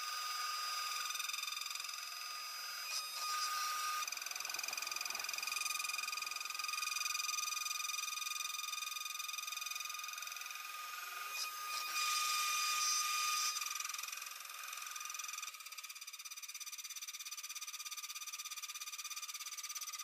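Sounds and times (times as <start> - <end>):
metal cutting noise: 0.0 - 8.1, 9.9 - 15.0
milling spindle whine: 0.0 - 16.2.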